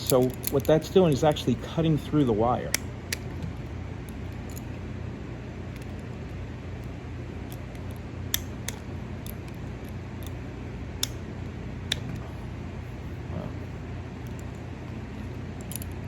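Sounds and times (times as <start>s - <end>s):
metal clicks from pliers: 0.0s - 1.6s, 15.6s - 16.0s
steady low hum: 0.0s - 16.0s.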